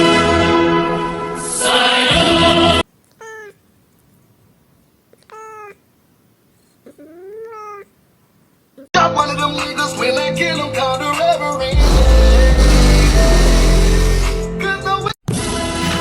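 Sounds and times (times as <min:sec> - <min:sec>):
cat meowing: 0:03.1 - 0:03.6, 0:05.2 - 0:05.8, 0:06.8 - 0:07.9
brassy music: 0:11.7 - 0:14.6.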